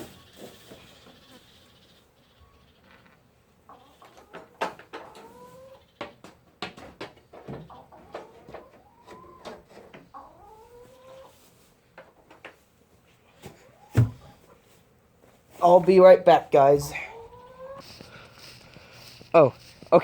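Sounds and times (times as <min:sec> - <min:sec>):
farm animals calling: 0:00.0 - 0:06.5, 0:07.3 - 0:11.6, 0:15.6 - 0:20.0.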